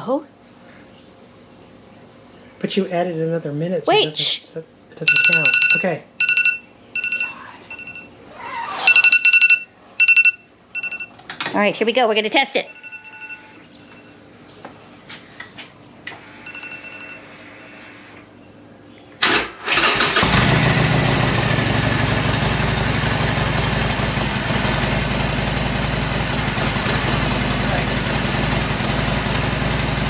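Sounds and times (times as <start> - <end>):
motorcycle engine cranking: 19.2 - 20.7
motorcycle engine idling: 20.1 - 30.0.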